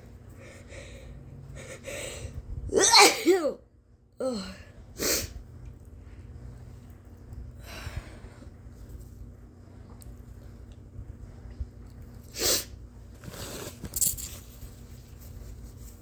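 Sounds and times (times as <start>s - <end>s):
woman sneezing: 2.8s - 3.6s.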